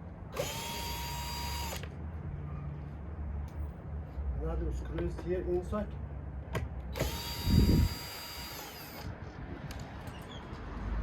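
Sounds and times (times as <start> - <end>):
cordless drill motor whining: 0.3 - 1.9, 6.9 - 9.1.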